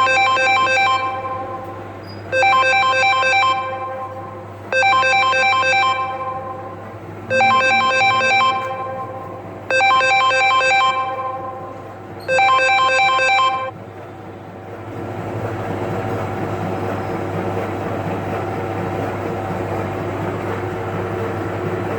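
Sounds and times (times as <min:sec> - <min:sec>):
phone ringtone melody: 0:00.0 - 0:01.6, 0:02.3 - 0:13.7
machine hum with low drone: 0:00.0 - 0:21.9.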